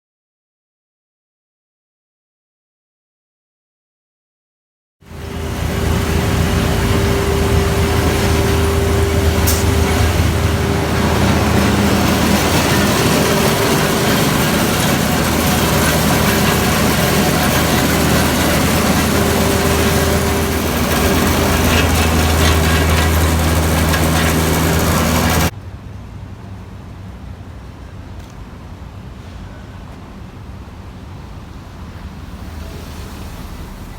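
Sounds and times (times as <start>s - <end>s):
floor milling machine grinding: 5.1s - 25.5s.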